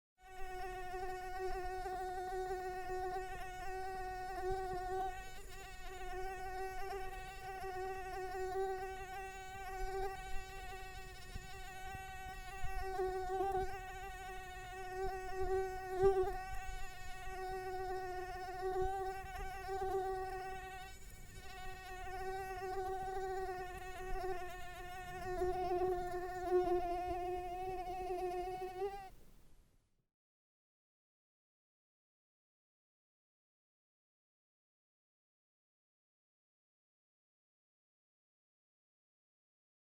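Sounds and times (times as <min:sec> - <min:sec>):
mosquito buzzing: 0:00.2 - 0:29.2.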